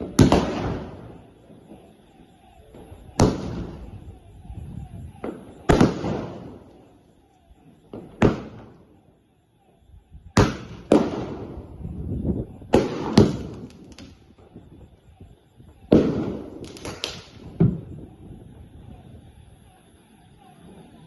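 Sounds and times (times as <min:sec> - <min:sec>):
firework bangs with rumble: 0:00.0 - 0:06.8, 0:07.8 - 0:08.8, 0:10.4 - 0:14.9, 0:15.6 - 0:19.0.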